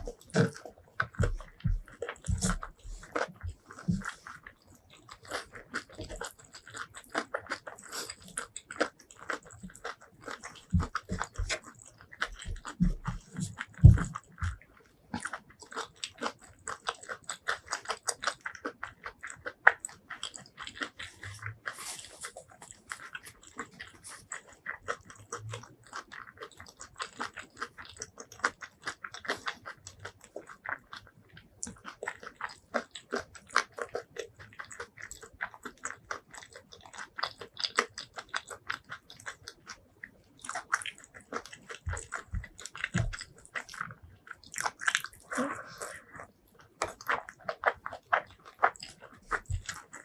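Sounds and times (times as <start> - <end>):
mouth clicks and crunches: 0.0 - 50.0
wet chewing and biting: 0.0 - 50.0.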